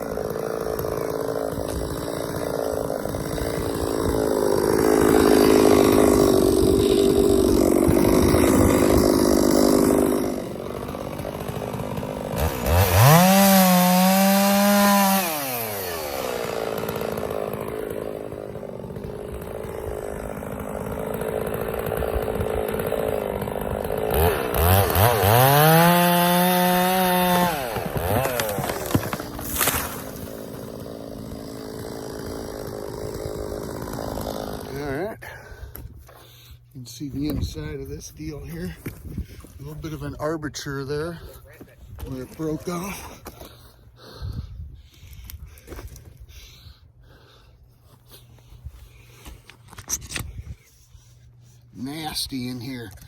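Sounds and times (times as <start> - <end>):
chainsaw revving: 0.0 - 35.4, 42.1 - 43.2
chainsaws running: 0.0 - 44.4, 47.1 - 53.0.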